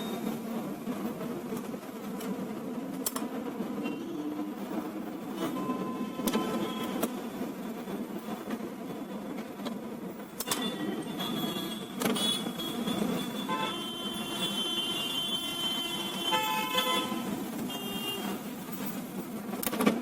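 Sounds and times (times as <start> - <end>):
street traffic: 0.0 - 20.0
car horns honking: 10.4 - 18.4.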